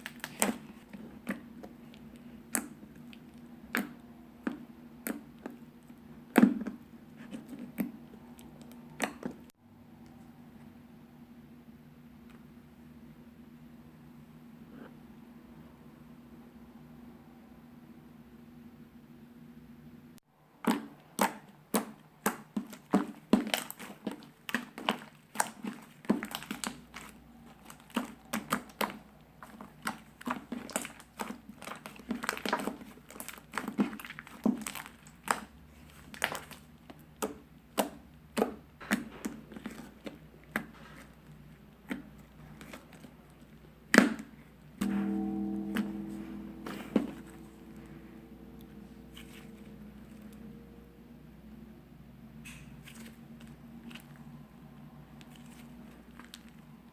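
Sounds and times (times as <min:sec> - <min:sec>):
held pitches tone: 0:44.8 - 0:51.1.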